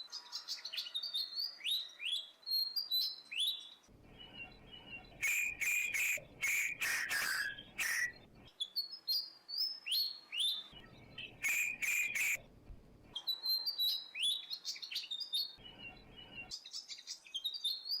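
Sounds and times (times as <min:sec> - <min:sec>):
harsh bird calls: 0:04.1 - 0:08.3, 0:10.8 - 0:12.4
short rising bird chirps: 0:04.3 - 0:08.3, 0:11.2 - 0:12.4.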